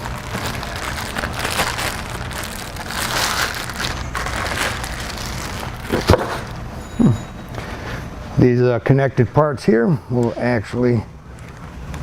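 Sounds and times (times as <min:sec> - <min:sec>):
packaging crinkling and rustling: 0:00.0 - 0:06.6.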